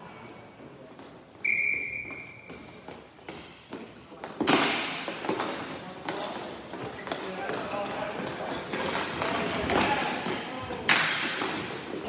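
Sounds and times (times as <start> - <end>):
referee's whistle blast: 1.4 - 2.4.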